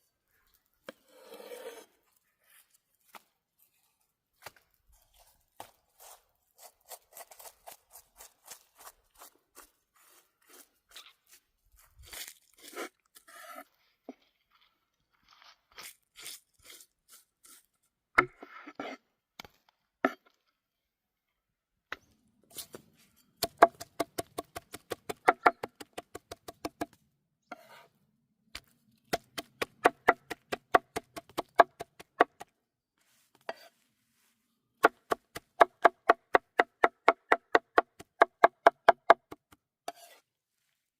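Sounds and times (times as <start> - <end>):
food crunching and tearing: 11.8 - 13.2.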